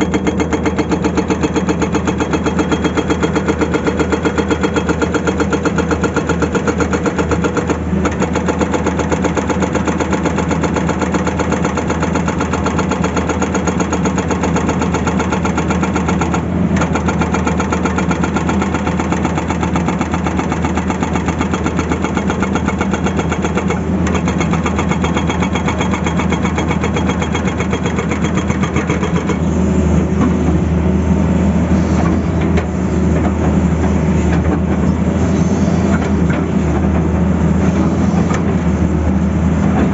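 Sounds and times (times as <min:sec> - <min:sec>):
hydraulic breaker hammering: 0:00.0 - 0:29.4
excavator diesel engine under load: 0:00.0 - 0:39.9.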